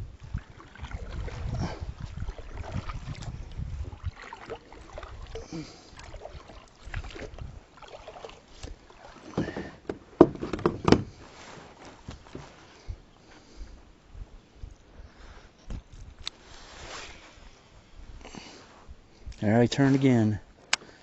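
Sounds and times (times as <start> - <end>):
paddle splashes: 0.0 - 13.6
paddle knocking against hull: 6.0 - 11.2.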